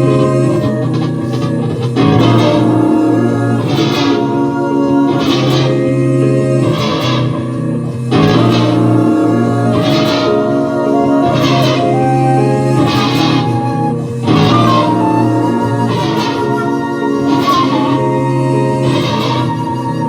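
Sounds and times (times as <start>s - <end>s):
sustained chords and bass: 0.0s - 19.8s
electric guitar: 0.0s - 20.0s
steady beat: 0.8s - 4.5s, 8.1s - 12.1s.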